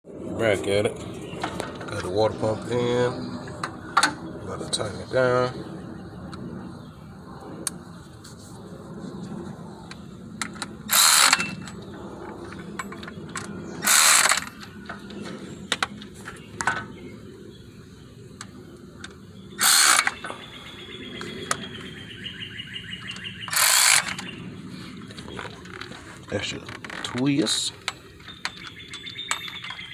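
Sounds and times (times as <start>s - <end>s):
ratchet wrench rasps: 10.9s - 11.5s, 13.8s - 14.5s, 19.6s - 20.2s, 23.5s - 24.3s.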